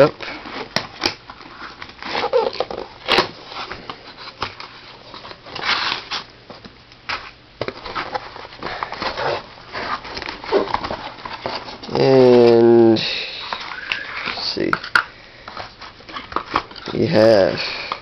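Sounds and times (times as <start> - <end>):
cardboard box rustling and scraping: 7.2 - 12.8.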